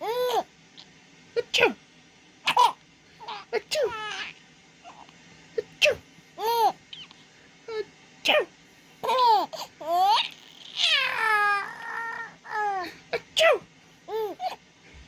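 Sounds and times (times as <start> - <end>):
baby laughing: 0.0 - 0.4, 2.5 - 5.0, 5.8 - 7.1, 9.0 - 13.3, 14.1 - 14.6
adult fake sneezes: 1.4 - 1.8, 5.6 - 6.1, 8.2 - 8.5, 12.8 - 13.7.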